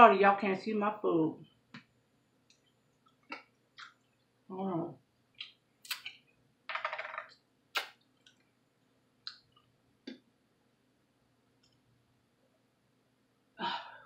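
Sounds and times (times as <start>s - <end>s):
wet mouth clicks: 5.4s - 6.2s, 7.7s - 8.4s.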